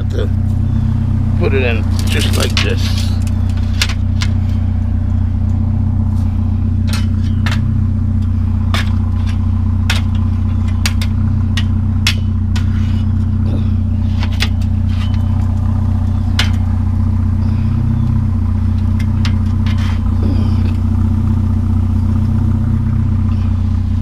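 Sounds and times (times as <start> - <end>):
truck engine idling: 0.0 - 24.0
scrap metal clanking: 1.5 - 4.8, 6.0 - 21.1.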